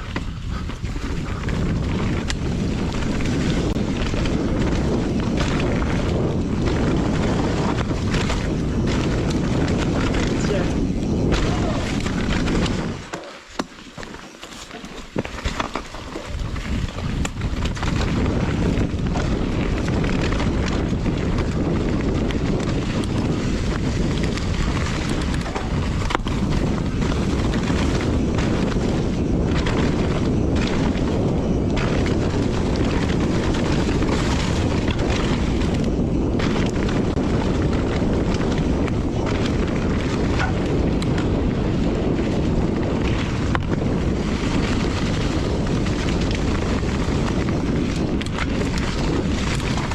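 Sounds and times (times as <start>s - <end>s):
wind buffeting microphone: 0.0s - 49.9s
mountain bike knocks and rattle: 12.2s - 18.0s.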